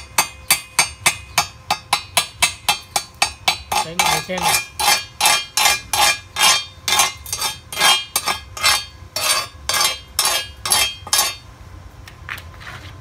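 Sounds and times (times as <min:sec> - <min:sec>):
metal-on-metal chipping strokes: 0:00.0 - 0:11.5.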